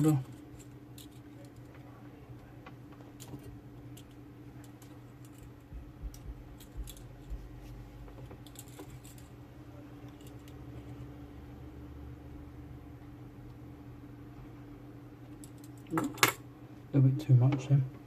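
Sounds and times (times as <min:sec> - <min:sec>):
steady low hum: 0:00.0 - 0:18.0
hand tools clicking and tapping: 0:04.7 - 0:07.4.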